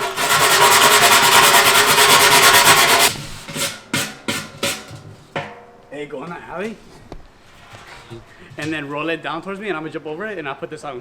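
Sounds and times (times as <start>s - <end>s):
brush scraping rust off metal: 0.0s - 5.4s.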